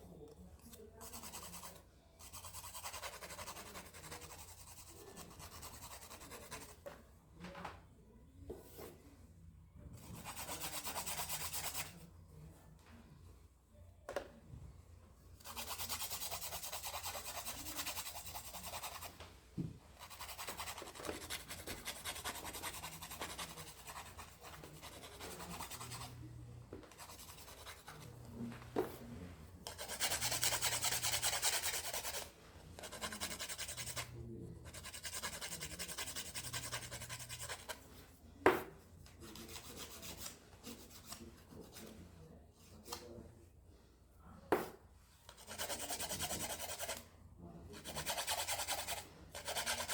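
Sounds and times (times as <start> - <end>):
fingernail being filed: 1.0 - 6.8, 15.4 - 19.1, 20.0 - 26.2, 29.7 - 37.8, 45.4 - 47.0, 47.8 - 49.9.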